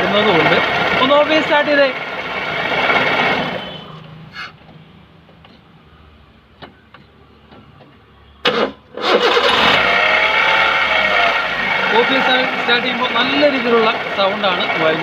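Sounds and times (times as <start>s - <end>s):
car engine cranking and starting: 0.0s - 3.6s, 8.4s - 15.0s
engine running with grating rattle: 0.0s - 4.8s.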